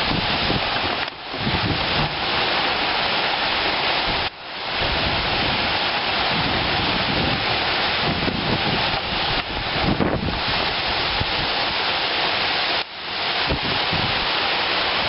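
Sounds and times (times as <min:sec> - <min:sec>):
heavy rain: 0:00.0 - 0:15.0
strong storm wind: 0:00.0 - 0:15.0.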